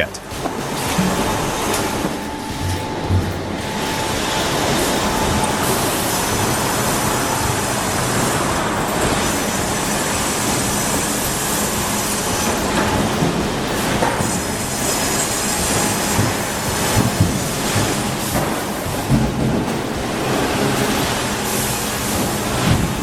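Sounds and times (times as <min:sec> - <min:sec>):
faint high whine: 0:00.0 - 0:23.0
sawmill machinery din: 0:00.0 - 0:23.0.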